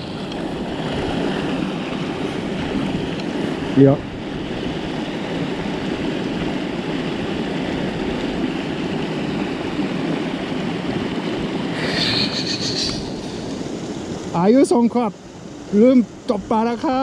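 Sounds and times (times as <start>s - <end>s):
river water flowing: 0.0s - 17.0s
high rapidly pulsing sound: 11.7s - 14.1s.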